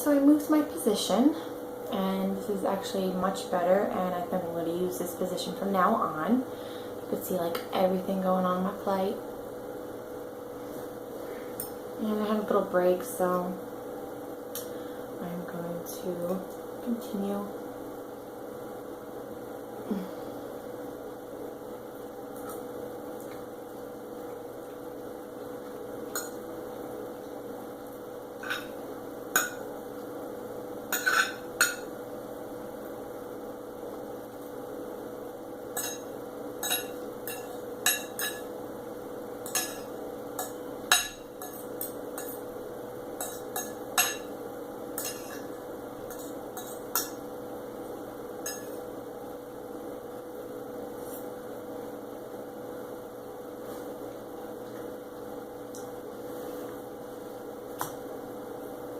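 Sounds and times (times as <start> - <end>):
steady electrical hum: 0.0 - 58.9
cutlery clinking on a plate: 31.0 - 31.9, 45.0 - 45.5, 48.5 - 48.8.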